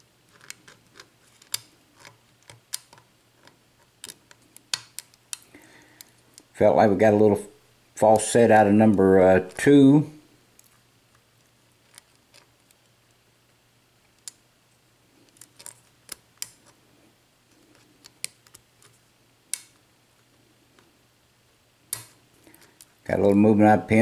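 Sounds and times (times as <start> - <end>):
low steady hum: 0.0 - 24.0
lock pick clicking and scraping: 0.3 - 5.4, 15.2 - 16.8.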